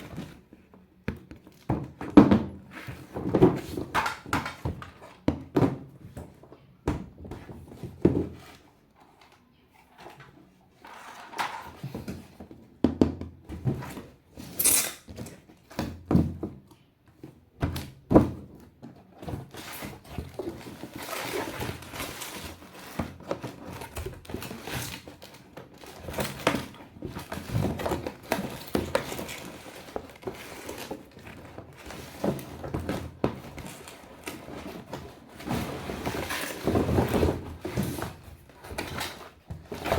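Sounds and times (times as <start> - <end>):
plastic toys clattering: 3.3 - 5.0, 9.2 - 12.2, 19.4 - 39.9.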